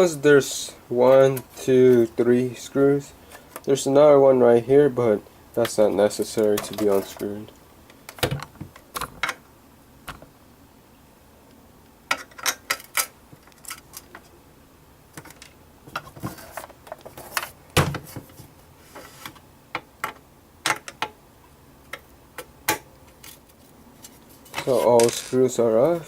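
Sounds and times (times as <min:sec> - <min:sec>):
screws and parts being handled: 0:12.1 - 0:14.3, 0:15.2 - 0:18.3, 0:23.1 - 0:26.0.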